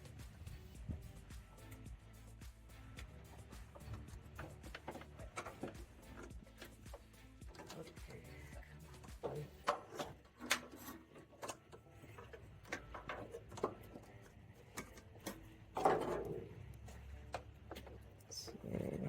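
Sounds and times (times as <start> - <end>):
hand tools clicking and knocking: 3.0 - 18.5.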